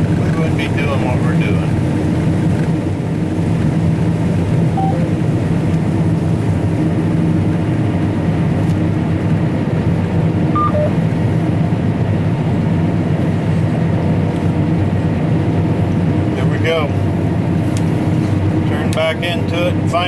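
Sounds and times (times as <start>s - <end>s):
combine engine hum: 0.0s - 20.0s
short electronic beeps: 4.7s - 5.1s, 10.6s - 11.0s.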